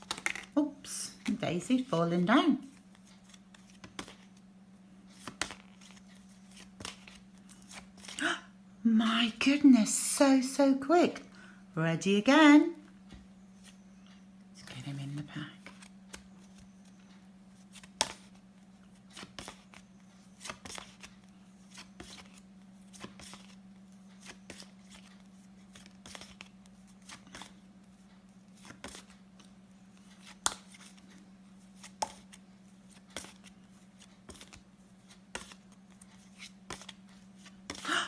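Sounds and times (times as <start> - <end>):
flashcards flicking: 0.0 - 0.5, 2.7 - 8.2, 15.6 - 31.2, 31.8 - 37.9.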